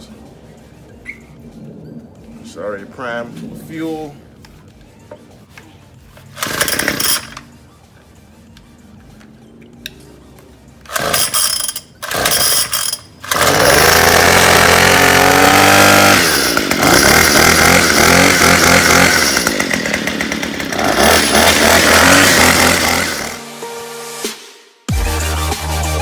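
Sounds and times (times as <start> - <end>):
starter cord pulls: 6.2 - 7.5, 10.8 - 23.4
string trimmer engine running: 6.2 - 7.5, 10.8 - 23.4.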